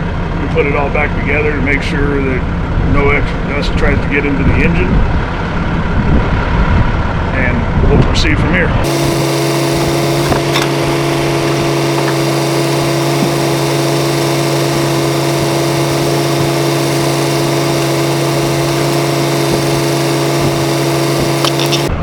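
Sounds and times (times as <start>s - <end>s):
engine idling: 8.8s - 22.0s.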